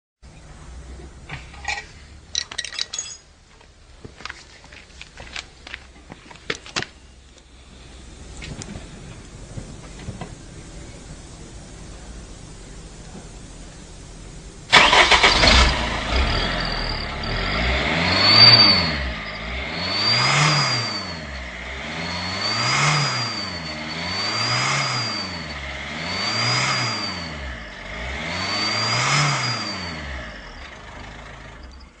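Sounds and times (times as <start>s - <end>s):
car engine revving: 14.2s - 31.9s
exhaust whistle: 14.7s - 32.0s.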